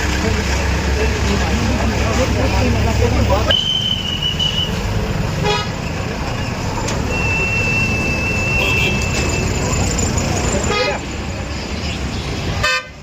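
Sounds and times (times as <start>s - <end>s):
road traffic: 0.0s - 13.0s
long high steady whistle: 3.5s - 4.8s, 7.1s - 9.7s
vehicle horn beep: 5.4s - 5.7s, 7.1s - 9.6s.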